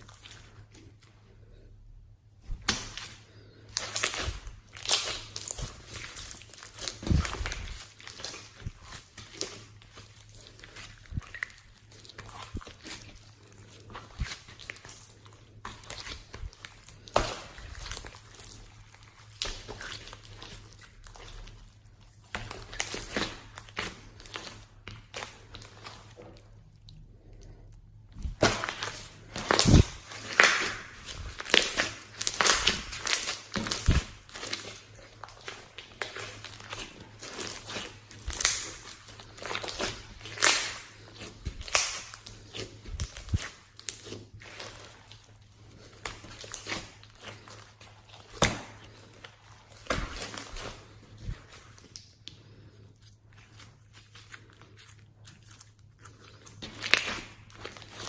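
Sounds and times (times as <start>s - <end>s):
hands squishing slime: 0.0s - 1.6s, 2.3s - 58.0s.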